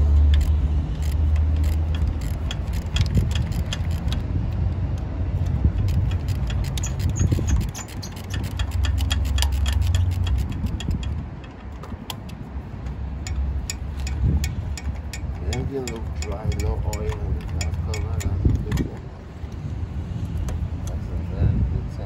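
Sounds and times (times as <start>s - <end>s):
socket ratchet clicking: 0.0s - 19.0s
steady low rumble: 0.0s - 22.0s.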